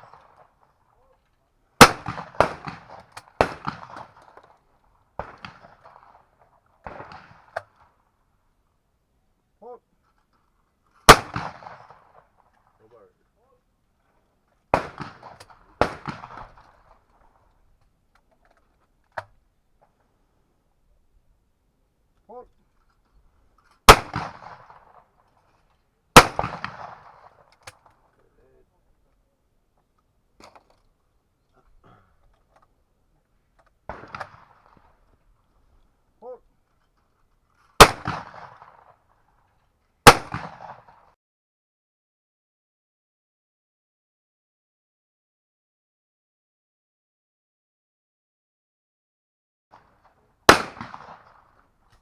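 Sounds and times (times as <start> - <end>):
shotgun shots echoing: 1.8 - 4.5, 5.2 - 7.8, 11.1 - 12.3, 14.7 - 17.3, 23.8 - 25.0, 26.2 - 27.9, 33.9 - 35.0, 37.8 - 38.9, 40.0 - 41.0, 50.5 - 51.6.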